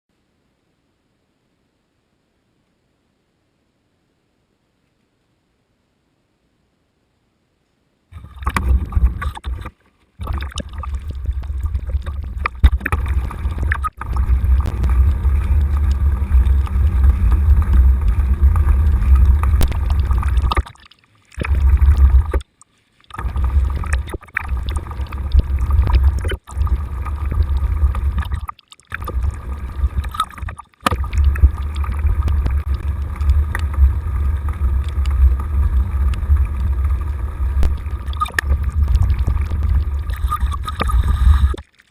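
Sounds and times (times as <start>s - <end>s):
wind and riding noise: 11.2s - 20.5s, 31.0s - 41.5s.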